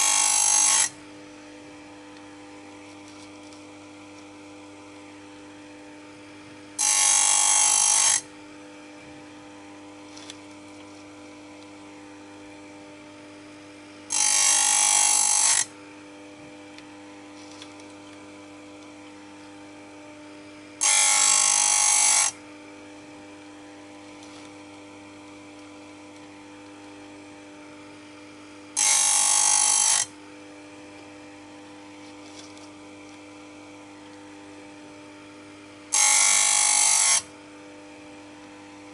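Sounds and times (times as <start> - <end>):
chain grinder motor running: 0.0 - 1.0, 6.8 - 8.3, 9.8 - 11.8, 14.1 - 15.8, 16.7 - 19.5, 20.7 - 22.4, 23.0 - 25.0, 27.7 - 30.1, 31.0 - 34.2, 35.9 - 37.3
grinding wheel on saw chain: 0.0 - 1.0, 6.8 - 8.3, 14.1 - 15.7, 20.8 - 22.4, 28.8 - 30.1, 35.9 - 37.3.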